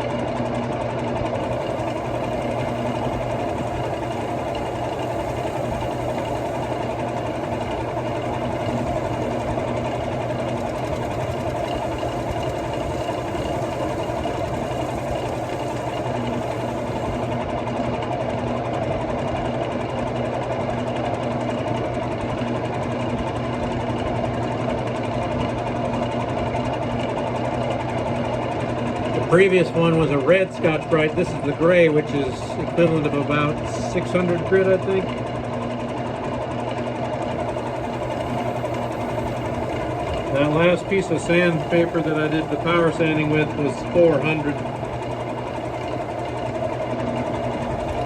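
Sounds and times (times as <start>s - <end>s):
wood lathe motor hum: 0.7s - 17.6s, 29.2s - 48.0s
faint sanding hiss: 1.4s - 17.4s, 37.3s - 48.0s.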